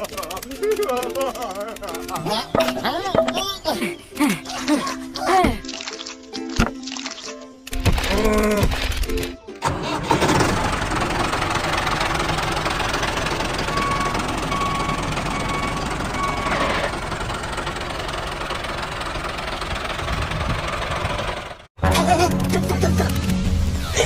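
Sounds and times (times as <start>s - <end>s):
small tractor motor running: 0.0s - 3.4s, 8.7s - 21.7s.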